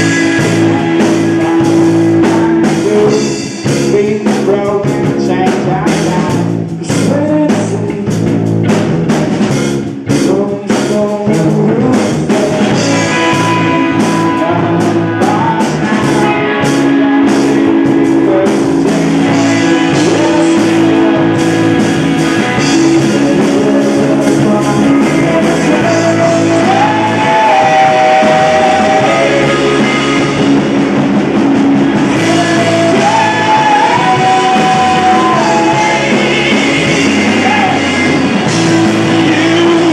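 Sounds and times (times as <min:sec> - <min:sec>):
person singing: 0:00.0 - 0:08.3, 0:10.0 - 0:39.9
rock band playing live: 0:00.0 - 0:39.9
drum hits: 0:11.8 - 0:39.9.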